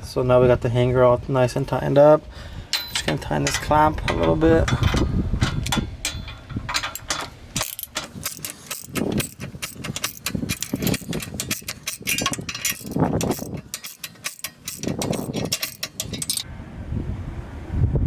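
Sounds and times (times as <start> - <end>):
ratchet wrench clicking: 2.7 - 16.5.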